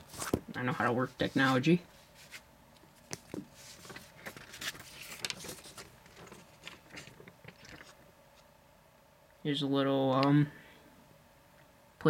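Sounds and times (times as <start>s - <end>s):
faint paper rustling: 0.0s - 8.5s.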